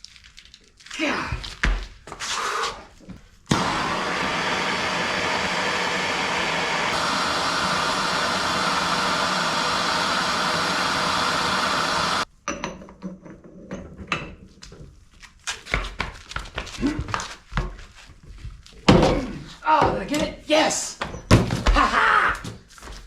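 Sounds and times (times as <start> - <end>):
torch flame hissing: 2.2 - 2.9, 3.5 - 12.3.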